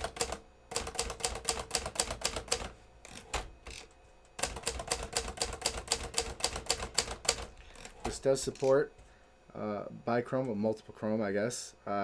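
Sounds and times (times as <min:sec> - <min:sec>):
manual typewriter keys clicking: 0:00.0 - 0:08.8.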